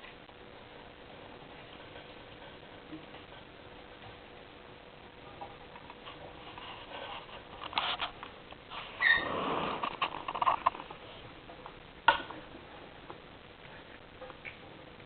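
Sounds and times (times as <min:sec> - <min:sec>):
rustling: 0:05.4 - 0:13.0
hamsters crunching insects: 0:05.6 - 0:11.1.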